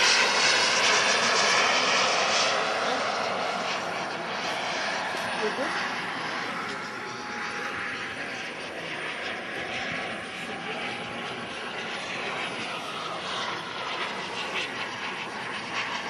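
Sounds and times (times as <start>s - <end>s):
gas turbine engine whine: 0.0s - 16.0s.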